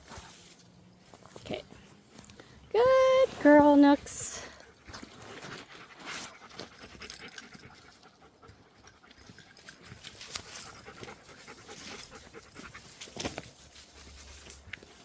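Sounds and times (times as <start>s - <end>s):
dog panting: 4.6s - 13.1s.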